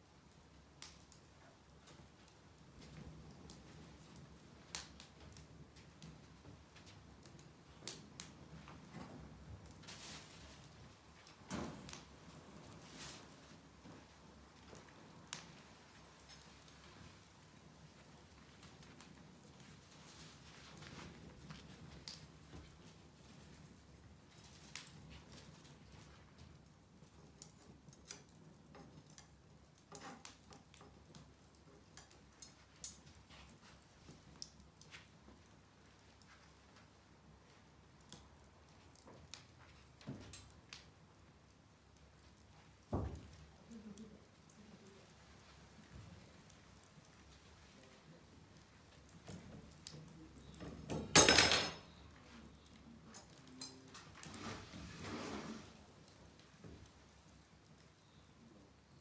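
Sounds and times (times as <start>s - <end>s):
wood fire popping and snapping: 0.0s - 59.0s
metallic clatter with ring: 51.1s - 52.0s
scraping and rustling: 54.0s - 56.0s.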